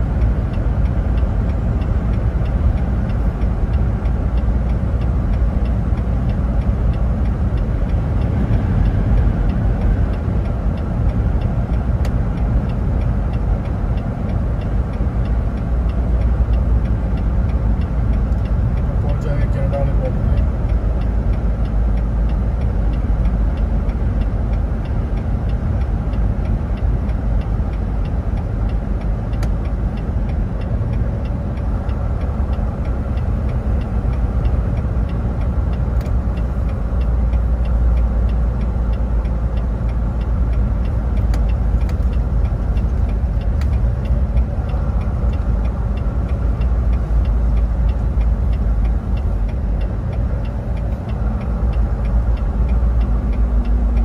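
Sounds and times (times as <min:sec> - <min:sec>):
vehicle engine and road noise: 0:00.0 - 0:54.0.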